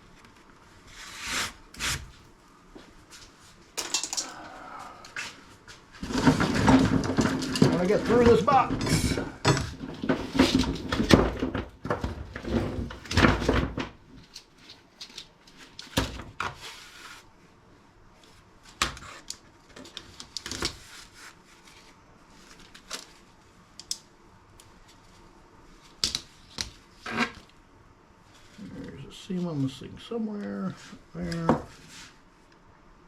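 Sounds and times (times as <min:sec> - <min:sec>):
objects clattering: 0:03.8 - 0:05.4, 0:06.0 - 0:14.0.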